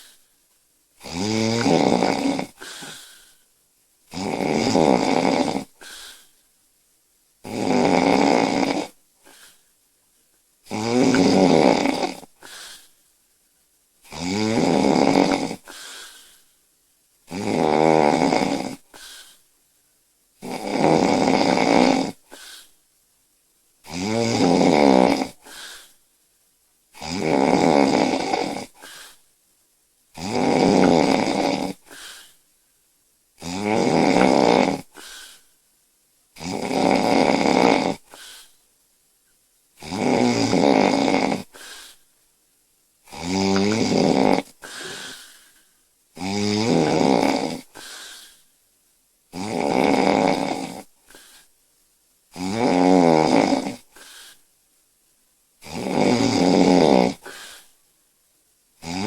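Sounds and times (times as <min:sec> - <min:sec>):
woman snoring loudly: 0:01.0 - 0:03.2, 0:04.1 - 0:06.2, 0:07.4 - 0:09.5, 0:10.7 - 0:12.9, 0:14.0 - 0:16.3, 0:17.3 - 0:19.4, 0:20.4 - 0:22.7, 0:23.8 - 0:25.9, 0:27.0 - 0:29.2, 0:30.2 - 0:32.4, 0:33.4 - 0:35.4, 0:36.4 - 0:38.5, 0:39.8 - 0:42.0, 0:43.1 - 0:45.4, 0:46.2 - 0:48.4, 0:49.3 - 0:51.4, 0:52.4 - 0:54.4, 0:55.6 - 0:57.6.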